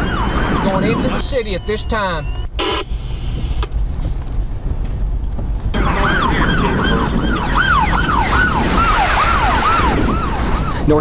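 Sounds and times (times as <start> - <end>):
electronic siren yelping: 0.0 - 3.6, 5.8 - 10.8
steady low rumble: 0.0 - 11.0.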